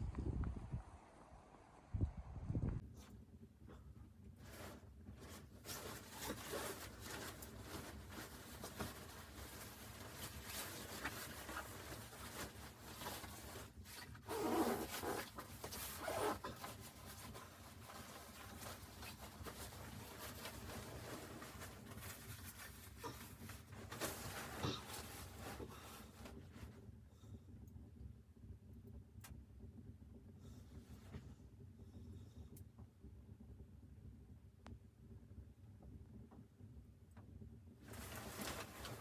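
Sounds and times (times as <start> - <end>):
rustling handling noises: 3.0 - 26.9, 37.8 - 39.0.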